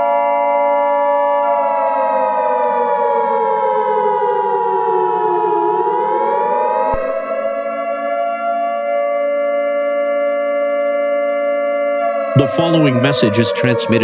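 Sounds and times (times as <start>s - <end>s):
civil defense siren wailing: 0.0s - 14.0s
steady high tone: 12.3s - 14.0s.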